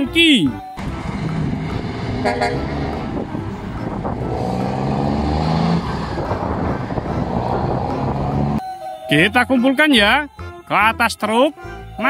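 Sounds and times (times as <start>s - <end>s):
truck engine running: 0.8s - 8.6s
horn toot: 2.0s - 3.1s.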